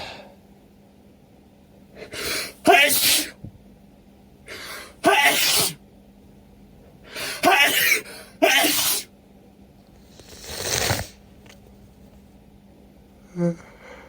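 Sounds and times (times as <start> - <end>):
person sneezing: 2.1 - 3.4, 5.0 - 5.8, 7.2 - 9.1
congested nose sniff: 10.0 - 11.2.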